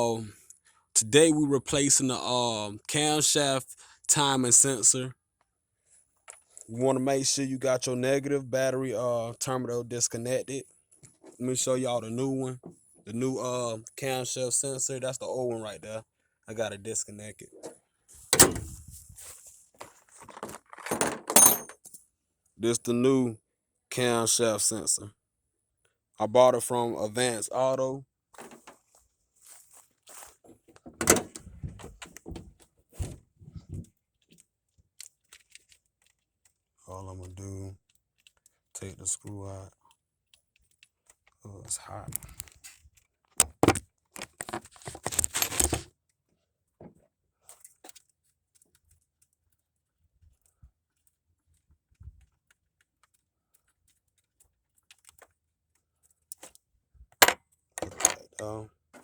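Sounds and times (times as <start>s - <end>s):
rustling and light clicks: 28.4s - 38.7s, 39.7s - 41.4s, 42.1s - 59.0s.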